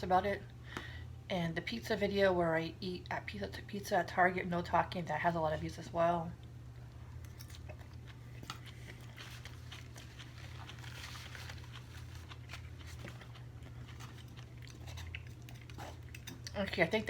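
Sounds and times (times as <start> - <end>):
person chewing food: 7.1 - 16.6.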